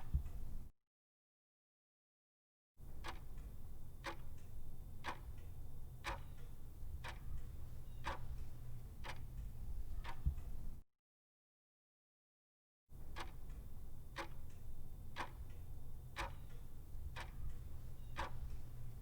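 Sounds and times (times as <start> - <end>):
steady ticking: 13.2 - 19.0.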